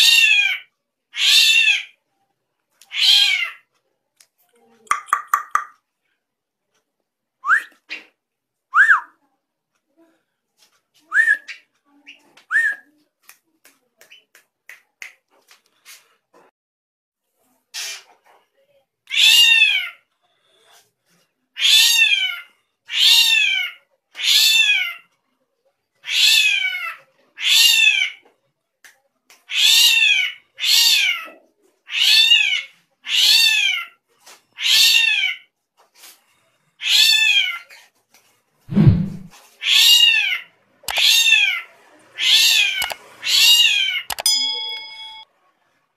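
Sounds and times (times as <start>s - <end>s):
low thump: 38.7s - 39.3s.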